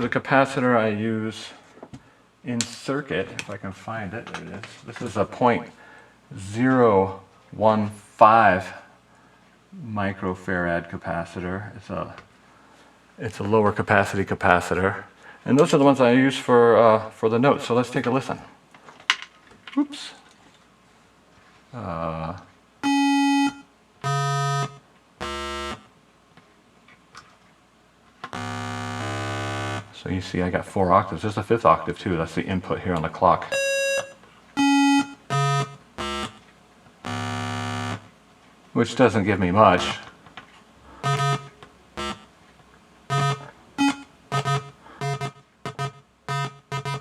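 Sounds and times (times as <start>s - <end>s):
buzzy square-wave synth note: 22.8s - 25.9s, 28.4s - 30.0s, 33.6s - 36.4s, 37.0s - 38.1s, 39.8s - 40.1s, 41.0s - 42.3s, 43.1s - 47.0s.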